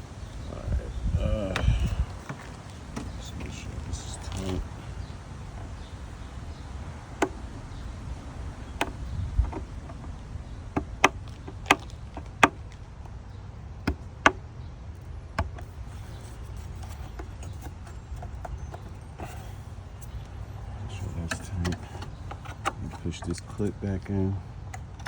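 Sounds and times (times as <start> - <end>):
clicks and knocks on hard plastic: 8.6 - 12.8, 13.8 - 14.4.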